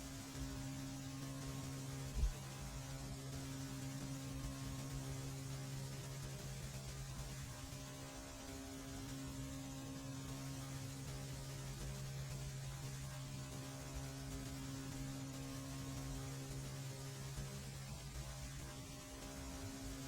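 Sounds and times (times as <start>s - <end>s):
faint hiss: 0.0s - 9.4s
low electrical hum: 0.0s - 20.0s.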